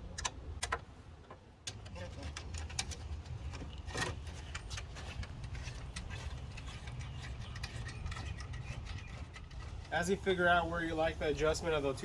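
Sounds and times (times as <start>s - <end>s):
clicks and taps of parts handled: 0.1s - 5.4s.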